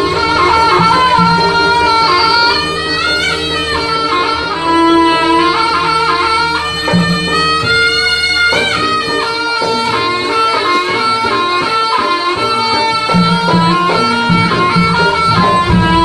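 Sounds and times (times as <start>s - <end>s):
melody of held notes: 0.0s - 16.0s
low drone: 15.3s - 16.0s.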